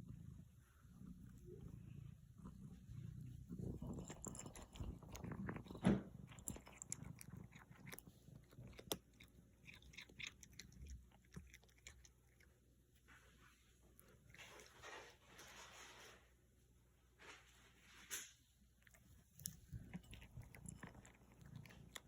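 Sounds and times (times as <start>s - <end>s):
cat crunching food: 2.4s - 12.8s, 18.7s - 22.0s.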